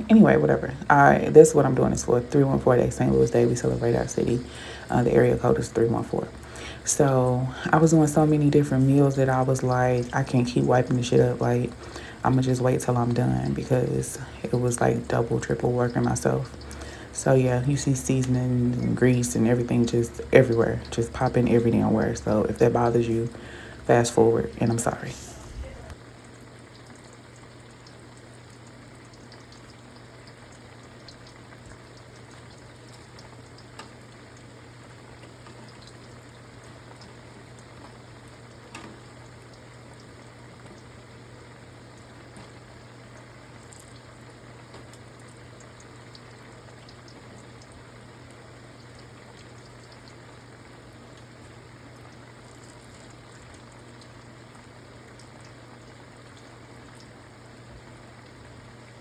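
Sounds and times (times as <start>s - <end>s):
steady low hum: 0.0s - 26.0s
food sizzling with pops: 1.5s - 26.0s.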